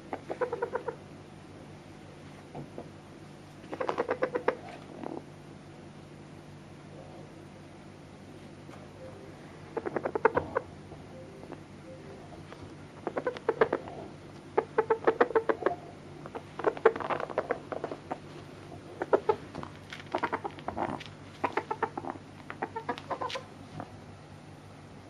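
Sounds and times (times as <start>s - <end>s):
cockerel clucking: 0.0s - 1.0s, 3.6s - 4.9s, 9.7s - 10.7s, 13.0s - 23.5s.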